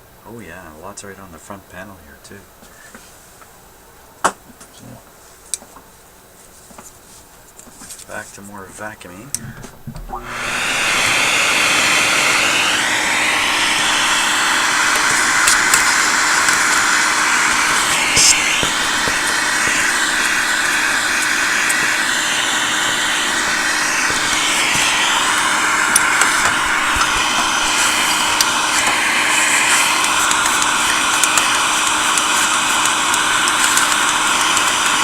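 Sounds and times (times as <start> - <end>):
vacuum cleaner running: 9.4 - 35.0.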